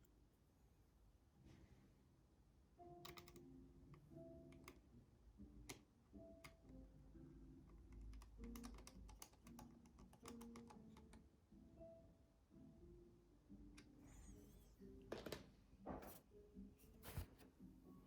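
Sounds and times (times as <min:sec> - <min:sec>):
soft background music: 0:00.0 - 0:18.0
laptop keyboard typing clicks: 0:03.0 - 0:03.5, 0:07.7 - 0:11.2.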